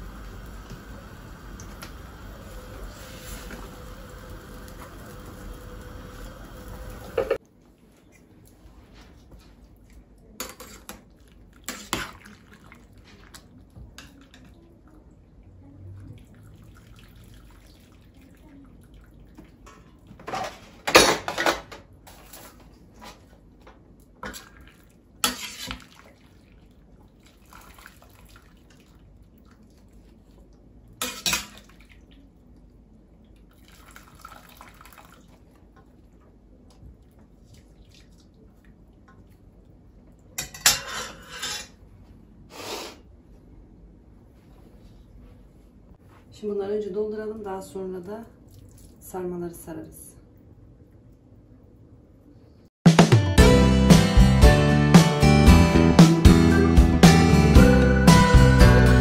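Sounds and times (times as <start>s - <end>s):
dishes and utensils clinking: 40.4s - 41.8s.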